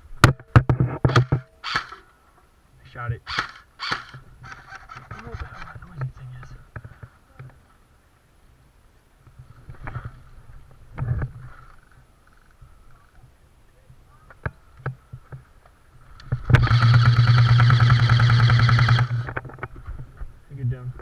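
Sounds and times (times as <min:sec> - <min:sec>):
airsoft gun full-auto burst: 0:01.1 - 0:02.1, 0:03.3 - 0:05.2, 0:16.5 - 0:19.4.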